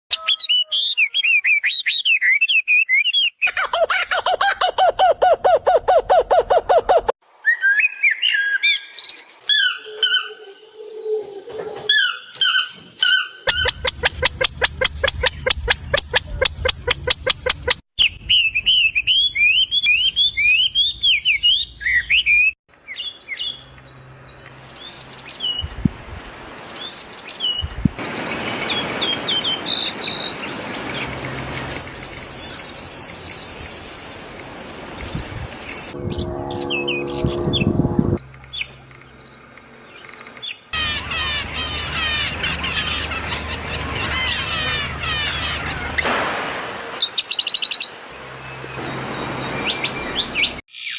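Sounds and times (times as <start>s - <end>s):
harsh low call: 36.0s - 39.8s
small birds chirping: 38.4s - 46.0s.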